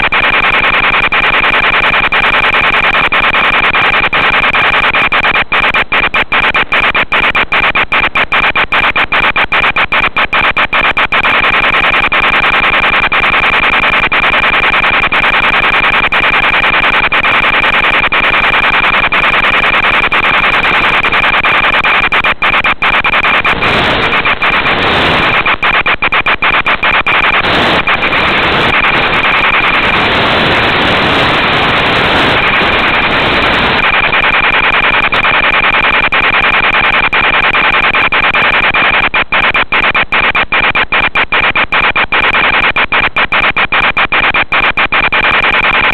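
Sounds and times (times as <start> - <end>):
radio static: 0.0 - 45.9
thin high whine: 18.6 - 38.9.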